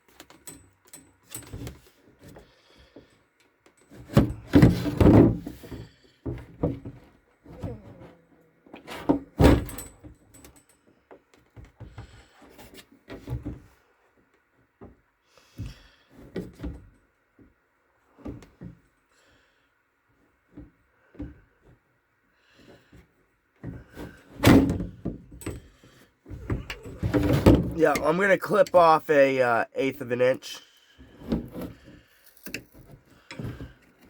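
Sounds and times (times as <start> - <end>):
knocks clunks and rattles of tools: 3.8 - 7.6, 26.3 - 27.8.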